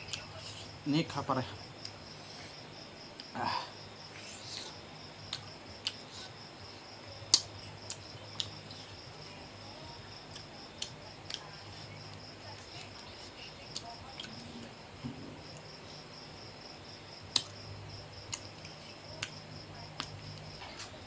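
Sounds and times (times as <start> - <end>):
crickets chirring: 0.0 - 21.0
chewing smacks and clicks: 4.2 - 6.3, 7.2 - 8.9, 10.3 - 11.6, 17.3 - 17.6, 18.2 - 19.4, 20.0 - 21.0.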